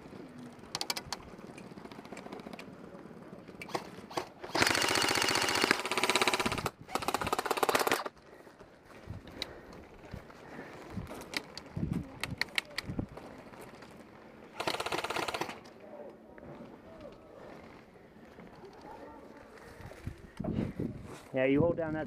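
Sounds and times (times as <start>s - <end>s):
airsoft rifle full-auto bursts: 3.7s - 8.1s, 14.5s - 15.6s.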